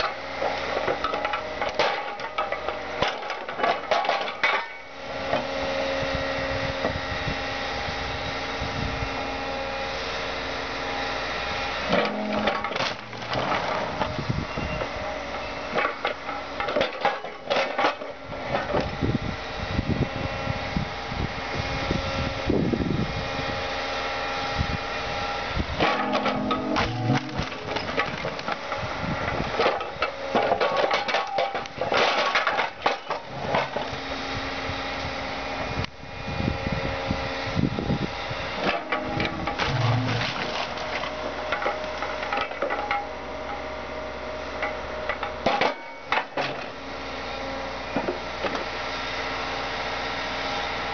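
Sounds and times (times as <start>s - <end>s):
metal crunching and cracking: 0.0s - 4.8s, 11.8s - 14.2s, 15.7s - 19.0s, 25.8s - 34.0s, 38.6s - 43.6s, 44.6s - 46.8s
excavator engine running: 0.0s - 21.8s, 23.8s - 45.5s.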